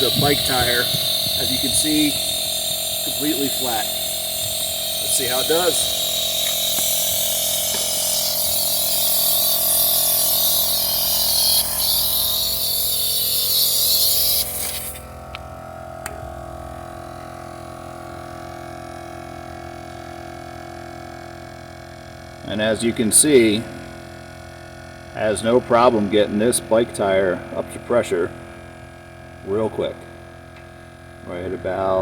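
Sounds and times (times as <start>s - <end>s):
air hissing: 0.0s - 15.2s
air compressor motor hum: 0.0s - 32.0s.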